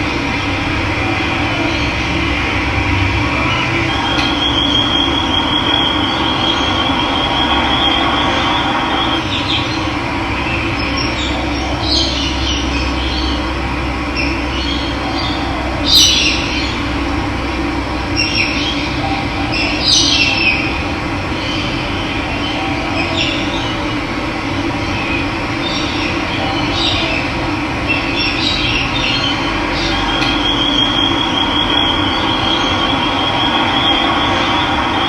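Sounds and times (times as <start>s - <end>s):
birds calling: 0.0s - 17.2s, 18.0s - 35.0s.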